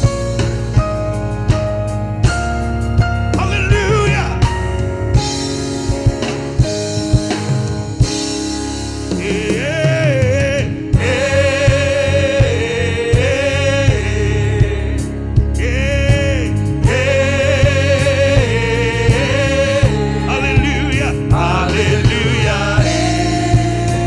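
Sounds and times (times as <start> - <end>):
gospel band with drum kit: 0.0 - 24.0
singers holding long notes: 9.1 - 24.0.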